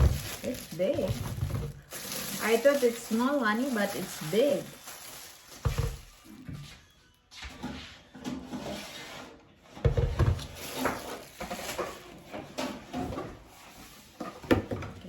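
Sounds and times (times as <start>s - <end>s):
knocks and scrapes of packaging: 0.0s - 6.3s, 9.8s - 15.0s.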